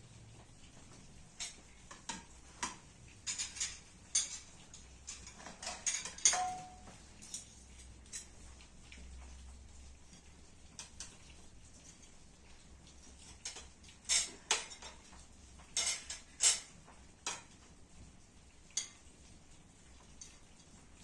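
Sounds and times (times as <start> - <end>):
cutlery and dishes clinking: 1.3 - 8.4, 13.3 - 15.1, 15.7 - 17.6, 18.7 - 19.1.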